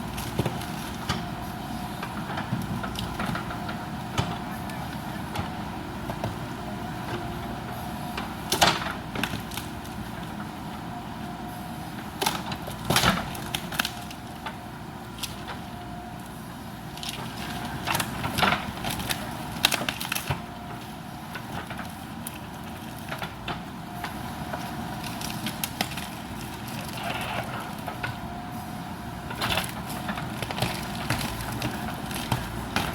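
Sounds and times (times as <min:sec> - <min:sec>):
diesel engine running: 0:00.0 - 0:32.9
roots cracking and splintering: 0:12.2 - 0:15.8, 0:16.9 - 0:28.3, 0:29.2 - 0:32.9.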